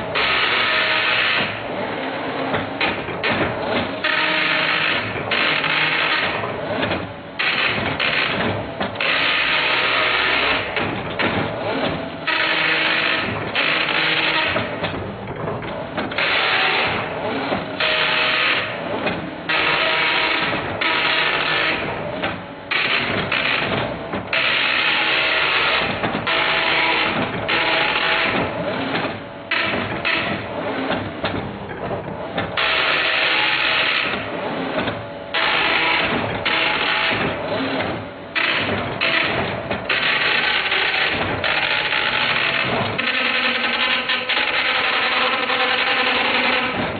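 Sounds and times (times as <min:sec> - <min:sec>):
dot matrix printer buzzing: 0:34.9 - 0:46.9.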